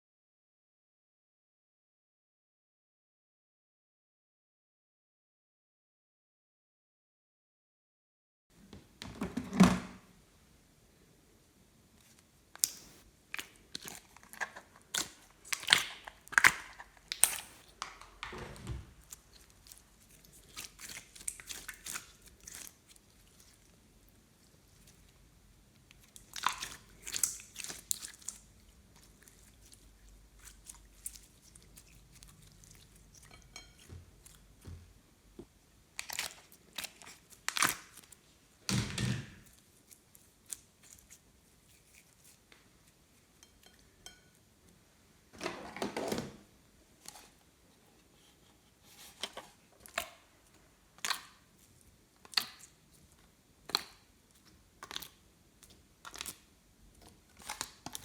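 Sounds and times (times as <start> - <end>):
slime squelching: 12.0 - 18.2, 18.8 - 35.0, 35.9 - 38.3, 39.4 - 43.3, 49.0 - 58.0
slime squished by hand: 12.6 - 17.8.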